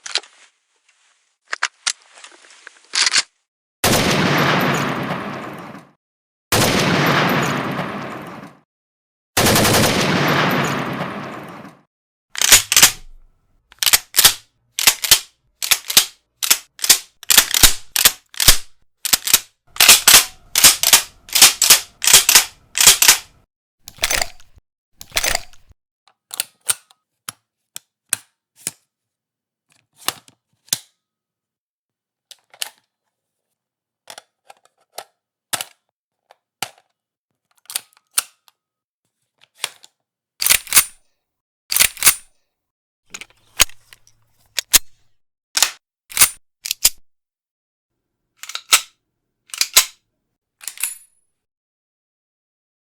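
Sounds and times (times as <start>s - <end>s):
gun action clicks and clacks: 12.4s - 25.7s, 40.4s - 41.0s, 41.7s - 42.3s, 43.1s - 47.0s, 48.4s - 50.0s, 50.6s - 51.2s.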